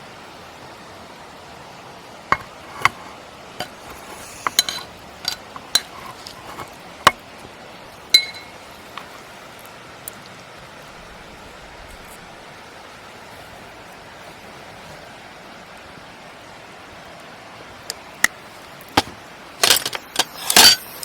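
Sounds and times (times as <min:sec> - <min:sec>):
steady background hiss: 0:00.0 - 0:21.0
metal utensils clinking: 0:02.3 - 0:07.2, 0:08.2 - 0:09.0, 0:19.0 - 0:21.0.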